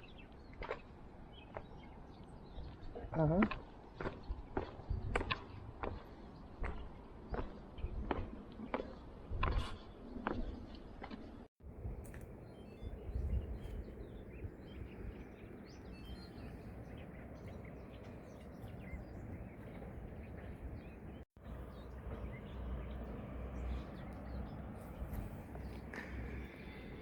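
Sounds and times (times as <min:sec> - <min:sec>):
small birds chirping: 0:11.7 - 0:27.0.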